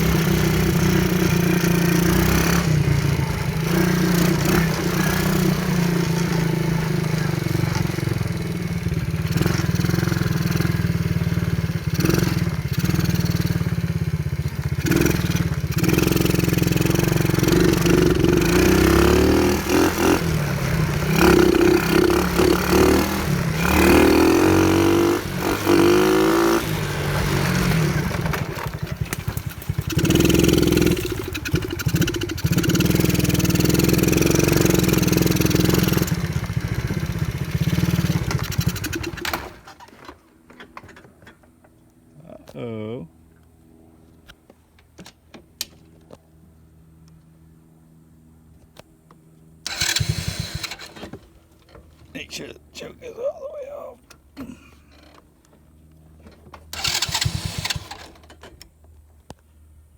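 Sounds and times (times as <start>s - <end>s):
atv engine revving: 0.0s - 39.9s, 49.6s - 51.3s, 52.2s - 55.2s, 55.9s - 58.6s.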